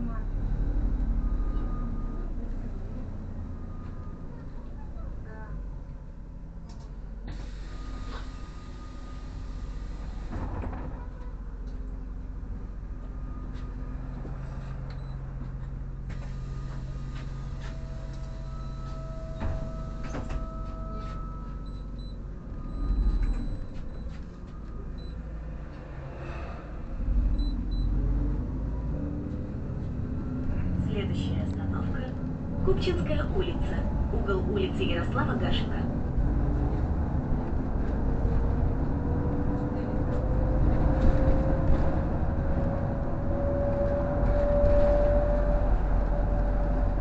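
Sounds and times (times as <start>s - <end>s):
bus engine running: 0.0s - 47.0s
bus doors clicking and knocking: 10.1s - 11.4s, 15.4s - 24.6s.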